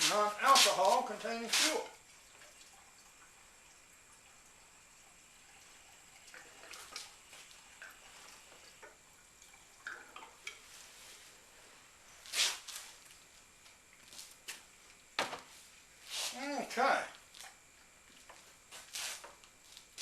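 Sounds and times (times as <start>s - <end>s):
fuel pouring from a can: 0.9s - 11.5s.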